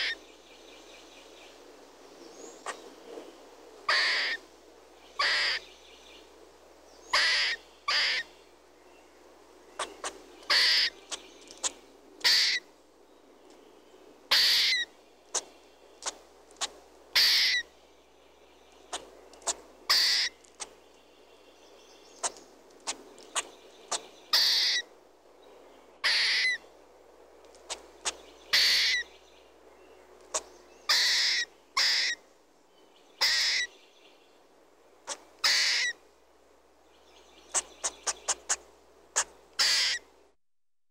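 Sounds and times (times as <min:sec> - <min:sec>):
squirrel hoarse calls: 0:00.0 - 0:00.2, 0:02.6 - 0:02.8, 0:03.9 - 0:04.4, 0:05.2 - 0:05.7, 0:07.1 - 0:08.3, 0:09.8 - 0:12.7, 0:14.3 - 0:17.7, 0:18.8 - 0:20.8, 0:22.2 - 0:24.9, 0:26.0 - 0:26.6, 0:27.6 - 0:29.1, 0:30.2 - 0:32.3, 0:33.2 - 0:33.7, 0:35.0 - 0:36.0, 0:37.4 - 0:40.1
faint birdsong: 0:00.0 - 0:40.4.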